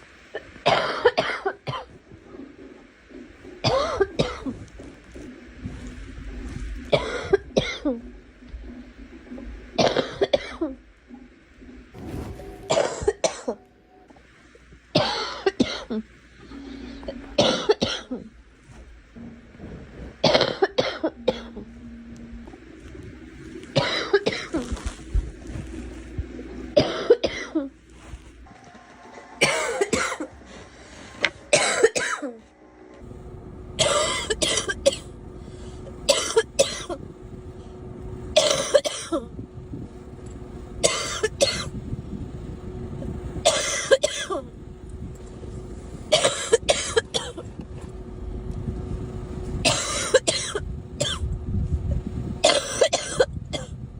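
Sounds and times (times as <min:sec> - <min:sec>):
girl coughing: 0:12.7 - 0:13.6, 0:17.1 - 0:18.3, 0:20.2 - 0:21.6, 0:23.8 - 0:24.7, 0:26.8 - 0:27.7, 0:29.4 - 0:30.3, 0:31.5 - 0:32.4, 0:33.8 - 0:35.1, 0:36.1 - 0:37.0, 0:38.4 - 0:39.3, 0:40.8 - 0:41.7, 0:43.4 - 0:44.4, 0:46.1 - 0:47.4, 0:49.6 - 0:51.2, 0:52.4 - 0:53.8.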